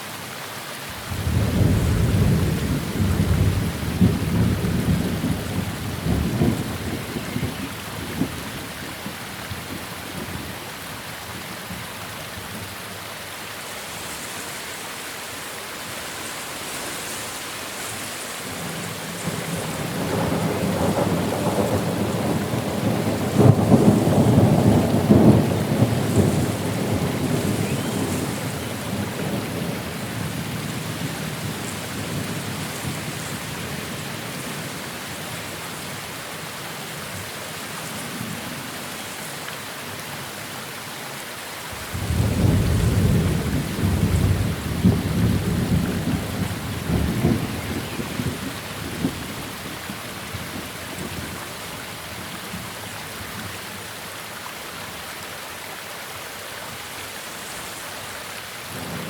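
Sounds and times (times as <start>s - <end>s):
steady rain: 0.0s - 59.0s
rolling thunder: 1.0s - 8.4s, 18.6s - 33.1s, 41.8s - 49.6s.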